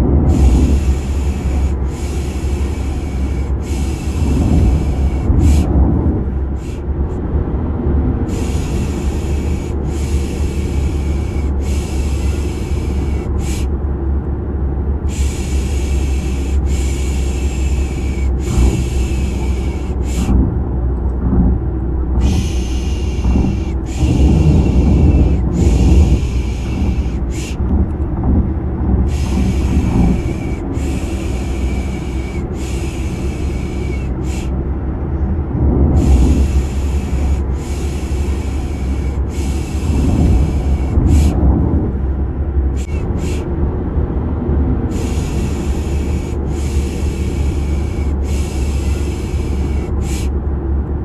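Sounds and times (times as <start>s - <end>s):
car engine drone: 0.0s - 51.0s
person shushing: 22.2s - 27.6s.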